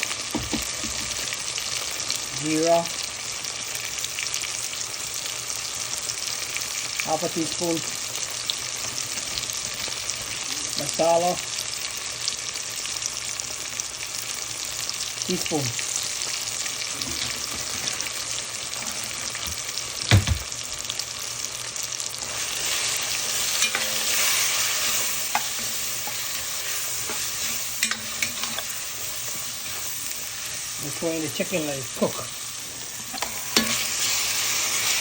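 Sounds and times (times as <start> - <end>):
paste sizzling in hot oil: 0.0 - 35.0
utensil stirring and scraping pot: 22.2 - 35.0.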